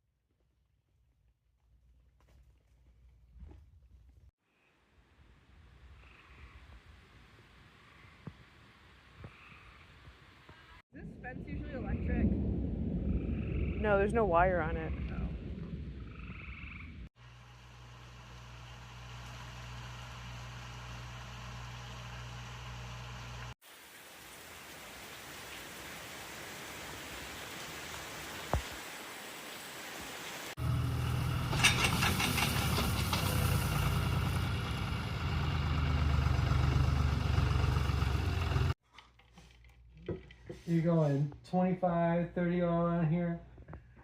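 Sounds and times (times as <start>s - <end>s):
vehicle engine humming: 17.2s - 23.6s, 30.6s - 38.8s
road or wind noise hiss: 17.2s - 36.5s.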